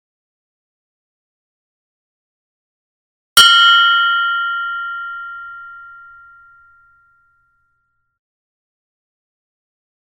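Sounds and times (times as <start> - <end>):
meditation bell ringing: 3.4 - 8.1.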